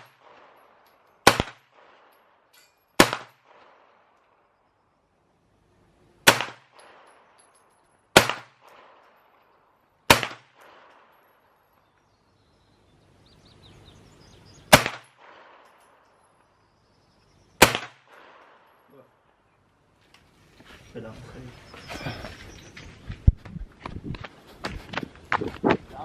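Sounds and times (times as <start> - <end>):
pistol gunshots with echo: 0.0 - 2.4, 3.0 - 4.2, 6.2 - 7.4, 8.1 - 9.4, 10.1 - 11.3, 14.7 - 16.0, 17.6 - 18.9.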